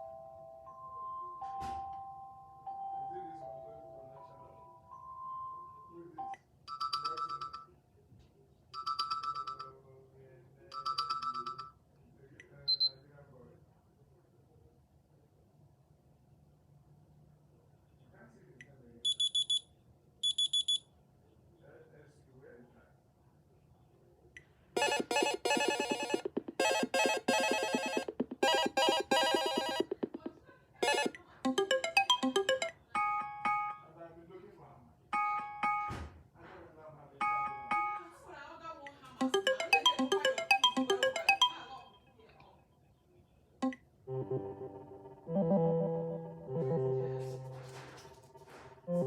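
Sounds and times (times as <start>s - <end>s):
trilled electronic alarm tone: 24.8s - 30.1s, 30.8s - 32.7s
rising electronic chime: 39.2s - 41.7s.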